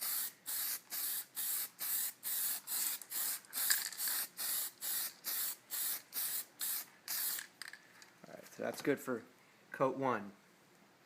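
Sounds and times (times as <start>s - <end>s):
aerosol spray hissing: 0.0s - 7.4s.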